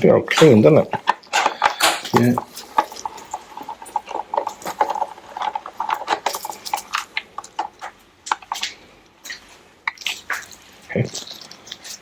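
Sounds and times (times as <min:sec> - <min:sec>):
hand tools and metal parts clicking: 0:00.4 - 0:09.4.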